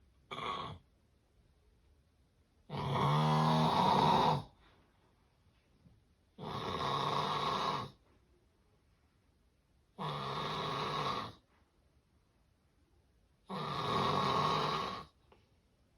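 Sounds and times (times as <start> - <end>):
person snoring loudly: 2.7 - 4.5, 6.4 - 7.9, 10.0 - 11.4, 13.5 - 15.1.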